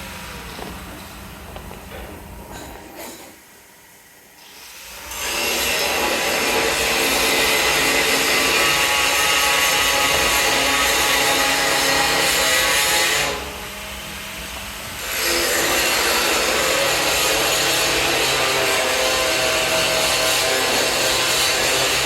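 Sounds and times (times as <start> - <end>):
furnace rushing noise: 5.0 - 22.0.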